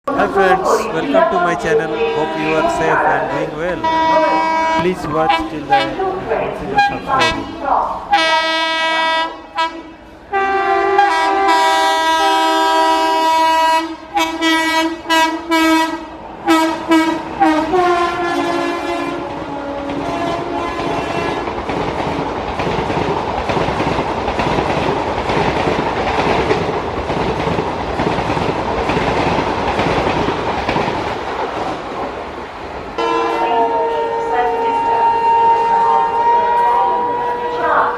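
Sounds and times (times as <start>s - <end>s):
train rushing past: 0.1s - 37.9s
locomotive twin-tone horn: 0.2s - 21.6s, 33.0s - 37.9s.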